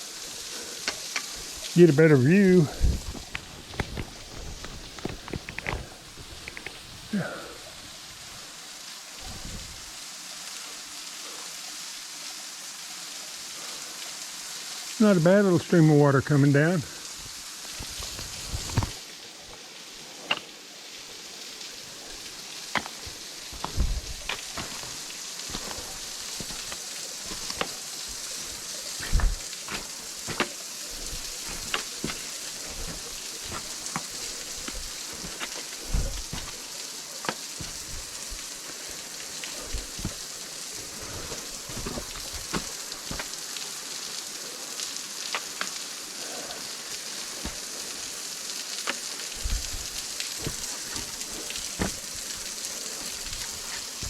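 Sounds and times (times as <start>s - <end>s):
small waterfall splashing: 0.0s - 54.0s
low thumps: 22.8s - 36.6s.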